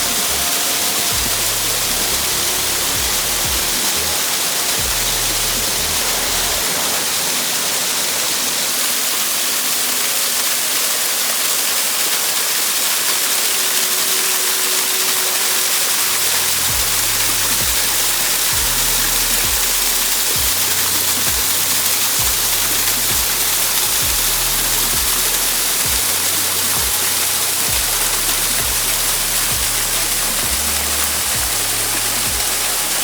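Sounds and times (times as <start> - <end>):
low bumps: 0.0 - 10.0
soft background music: 0.0 - 33.0
waterfall rushing: 0.0 - 33.0.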